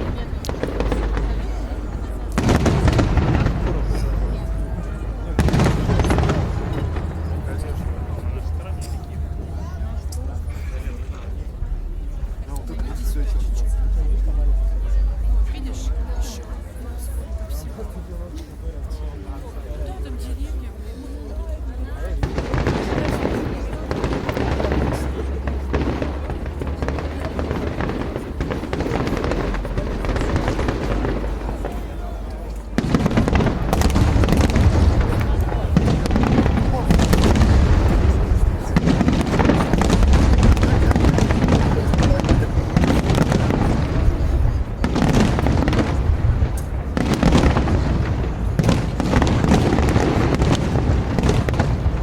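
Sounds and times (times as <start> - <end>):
fireworks popping and crackling: 0.0 - 14.0, 22.0 - 52.0
low rumble: 0.0 - 17.4.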